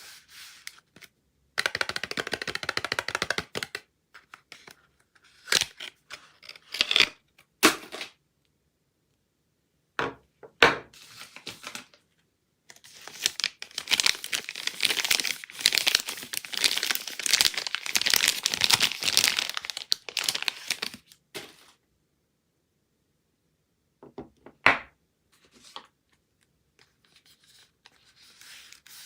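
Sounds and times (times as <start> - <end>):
wrapper crinkling: 12.8 - 21.7
wrapper rustle: 12.8 - 21.8.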